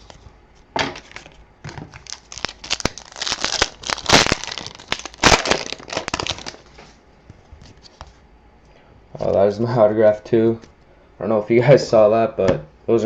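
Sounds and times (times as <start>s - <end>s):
wrapper tearing and crumpling: 1.0s - 6.7s.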